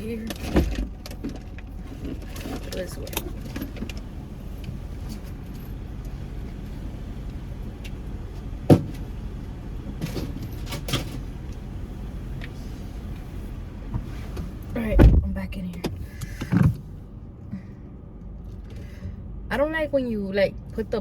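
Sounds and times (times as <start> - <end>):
car idling: 0.0 - 21.0
sharp thump: 14.9 - 15.4.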